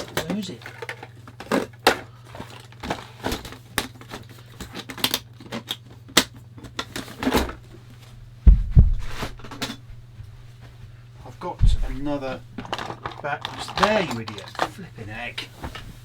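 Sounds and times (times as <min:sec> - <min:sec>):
heavy thump: 0:08.2 - 0:10.5, 0:11.6 - 0:12.7
hand rummaging through small objects: 0:11.6 - 0:16.0.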